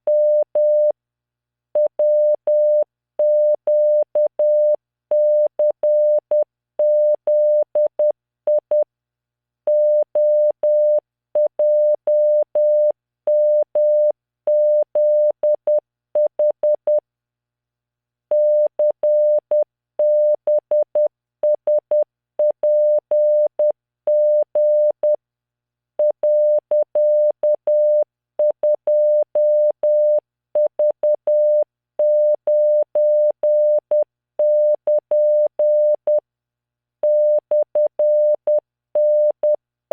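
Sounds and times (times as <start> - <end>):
morse code tone: 37.0 - 39.6.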